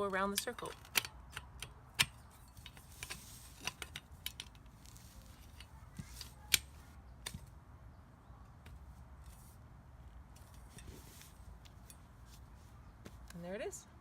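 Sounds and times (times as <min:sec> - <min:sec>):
metal poles clicking into fittings: 0:00.0 - 0:07.5.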